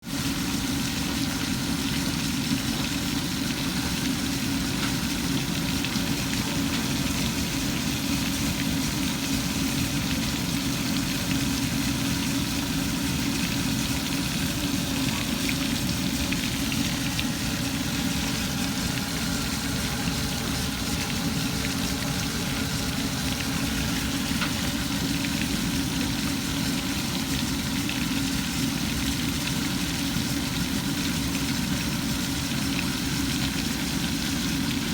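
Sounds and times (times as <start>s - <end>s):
chicken sizzling in hot oil: 0.0s - 34.9s
steady low hum: 2.2s - 29.2s.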